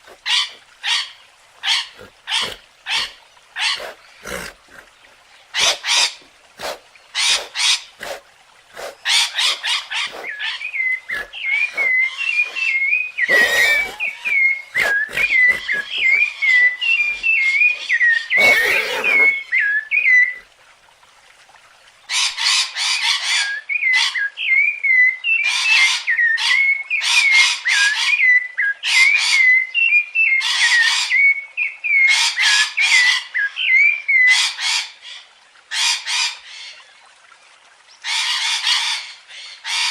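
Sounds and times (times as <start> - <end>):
scratchy bird calls: 5.6 - 8.2, 8.8 - 19.4
warbling bird whistle: 11.7 - 16.8.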